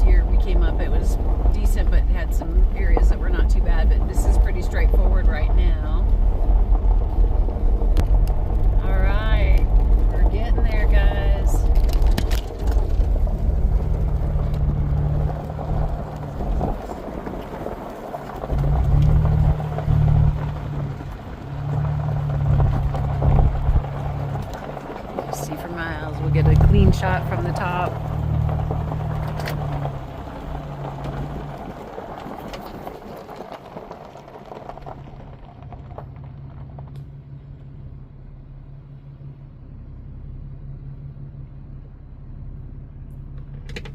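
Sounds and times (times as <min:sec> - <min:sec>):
car engine running: 0:00.0 - 0:43.9
tyre and road noise: 0:00.0 - 0:43.9.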